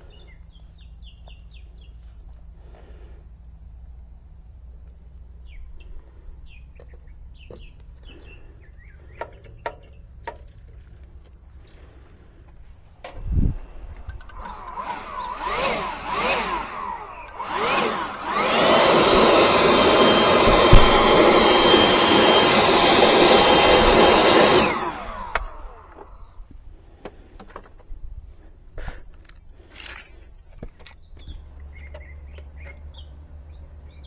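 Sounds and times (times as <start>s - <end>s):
power drill revving: 13.4s - 26.4s.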